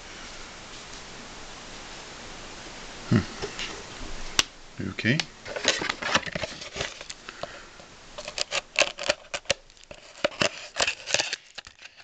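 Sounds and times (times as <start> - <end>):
trading cards clicking and scraping: 5.5 - 7.6, 8.2 - 12.0.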